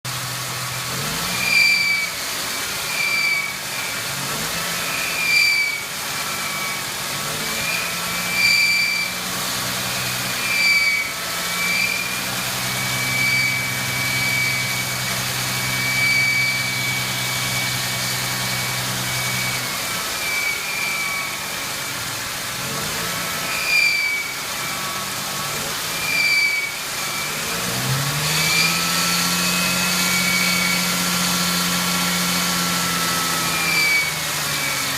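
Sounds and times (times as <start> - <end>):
car engine running: 0.0 - 26.1
engine squealing: 0.1 - 34.9.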